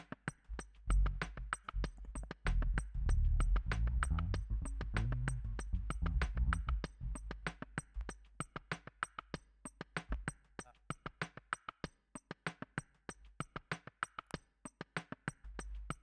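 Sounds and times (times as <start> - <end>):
quiet music with ticking beat: 0.2 - 11.2.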